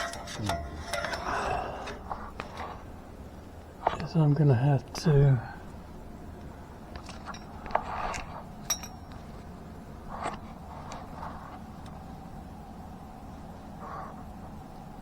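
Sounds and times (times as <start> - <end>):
small parts clicking and scraping: 0.0 - 2.8.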